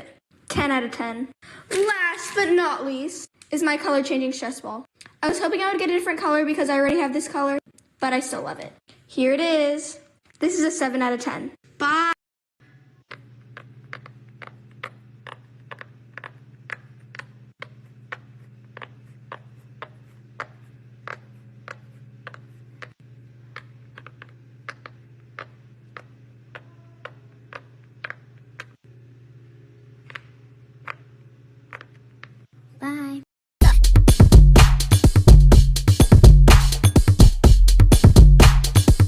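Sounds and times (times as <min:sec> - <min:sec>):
steady low hum: 0:12.6 - 0:32.8
fidget toy clicking: 0:13.1 - 0:28.8.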